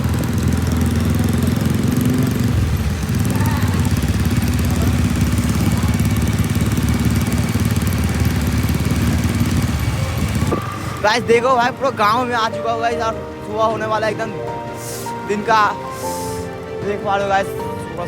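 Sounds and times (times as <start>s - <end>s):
motorcycle engine while riding: 0.0s - 12.3s.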